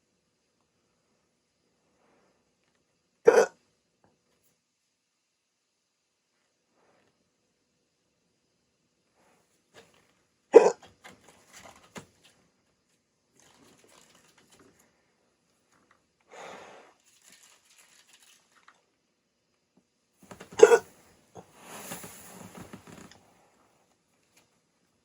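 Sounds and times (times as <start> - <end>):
man hiccuping: 3.3 - 3.6, 10.6 - 10.8, 20.6 - 20.8.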